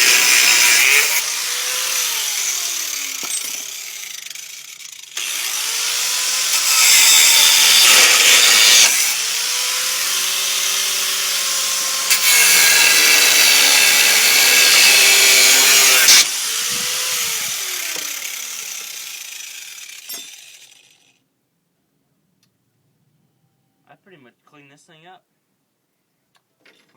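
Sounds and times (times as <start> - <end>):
angle grinder cutting steel: 0.0 - 21.2
grinder winding down whine: 12.8 - 21.0.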